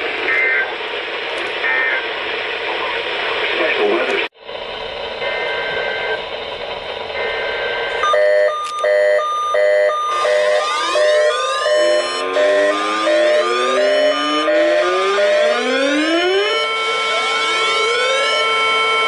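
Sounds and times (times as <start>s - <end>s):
radio static hiss: 0.0s - 8.0s
pulsing electronic alarm beeps: 5.2s - 6.2s, 7.2s - 19.0s
siren winding up: 5.2s - 6.3s, 7.1s - 19.0s.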